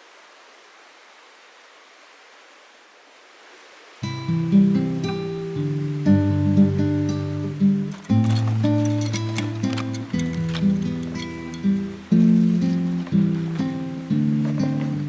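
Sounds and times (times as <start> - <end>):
faint steady hiss: 0.0 - 15.0
acoustic guitar music: 4.0 - 15.0.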